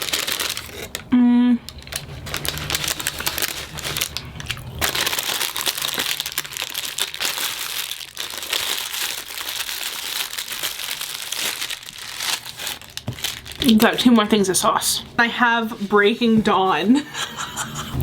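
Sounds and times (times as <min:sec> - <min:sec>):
packaging crinkling and crumpling: 0:00.0 - 0:01.1, 0:01.7 - 0:14.2.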